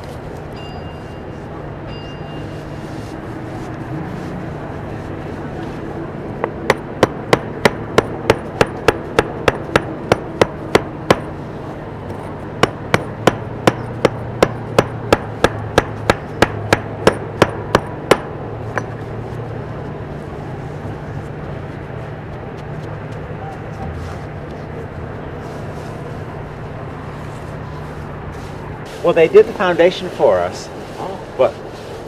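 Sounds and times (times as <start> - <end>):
low steady hum: 0.0 - 32.0
hammer blows: 6.4 - 11.4, 12.1 - 19.0.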